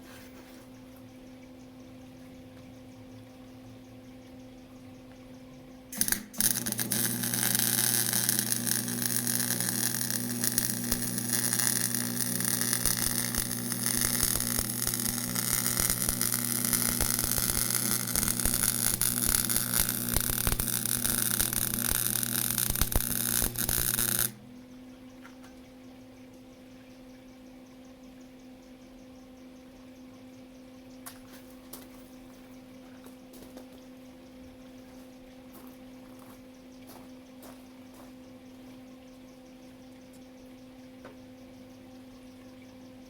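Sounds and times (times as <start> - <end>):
arc welding crackling hiss: 6.0 - 24.4
electrical buzz: 6.0 - 24.4.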